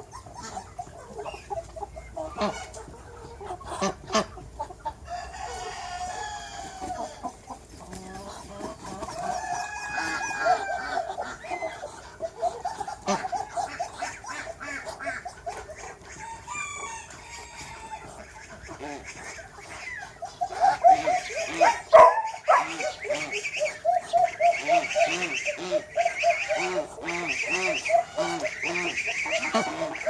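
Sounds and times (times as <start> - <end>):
chickens clucking: 0.0 - 30.0
rooster crowing: 5.1 - 7.2, 9.3 - 11.0, 16.2 - 18.1.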